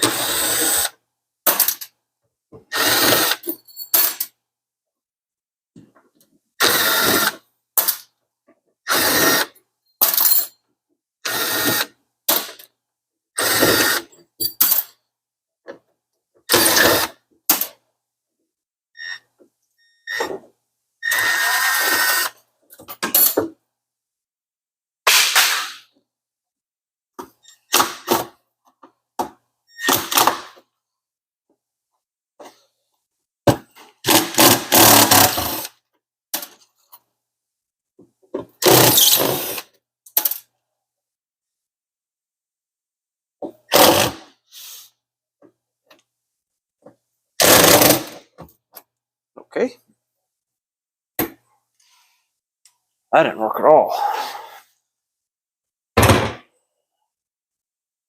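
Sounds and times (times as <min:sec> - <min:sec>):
power drill driving screws: 0:00.0 - 0:01.0, 0:02.7 - 0:03.4, 0:06.6 - 0:07.4, 0:08.9 - 0:09.6, 0:11.2 - 0:12.6, 0:13.4 - 0:14.1, 0:16.5 - 0:17.2, 0:21.0 - 0:22.4, 0:29.8 - 0:30.6, 0:34.0 - 0:35.8, 0:38.6 - 0:39.7, 0:43.7 - 0:44.3, 0:47.4 - 0:48.2.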